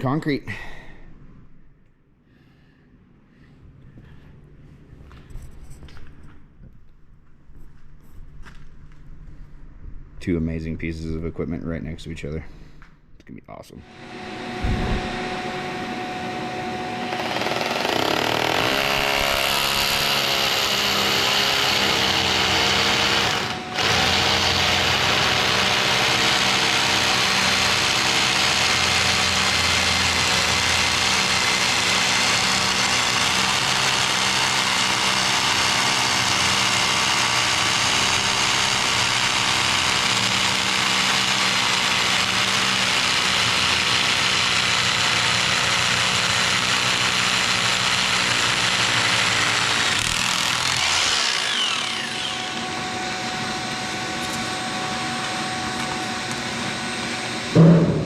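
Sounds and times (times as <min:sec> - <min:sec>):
machine humming: 0:13.7 - 0:31.8.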